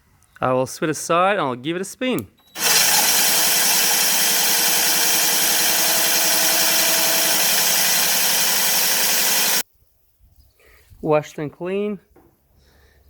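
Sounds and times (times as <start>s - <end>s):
mower reel whirring grind: 2.6s - 9.6s.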